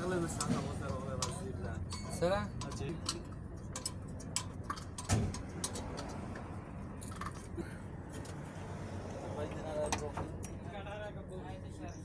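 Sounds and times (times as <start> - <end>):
light metallic clicks and clinks: 0.2 - 6.4, 7.0 - 7.5.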